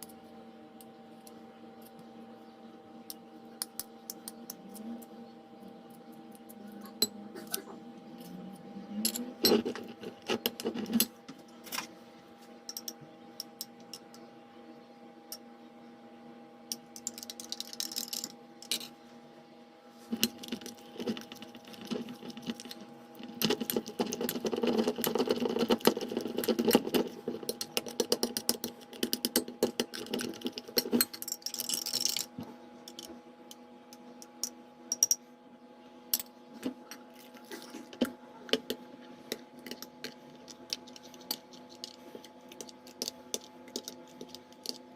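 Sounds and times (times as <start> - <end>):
steady low hum: 0.0 - 44.9
rapid clicking and scraping: 20.1 - 33.1, 37.8 - 44.9.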